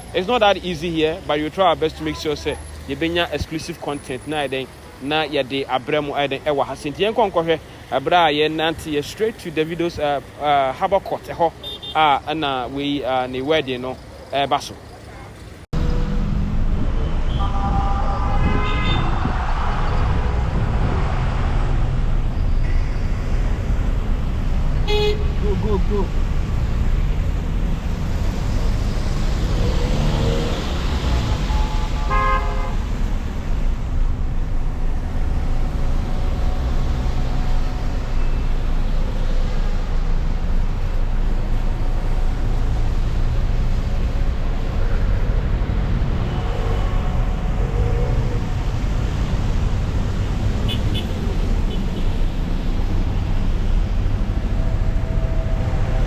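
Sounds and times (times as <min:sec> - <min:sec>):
traffic rumble: 0:00.0 - 0:56.0
car horns tooting: 0:11.6 - 0:12.2, 0:17.0 - 0:19.7, 0:24.8 - 0:26.0, 0:29.6 - 0:33.0, 0:50.6 - 0:52.5.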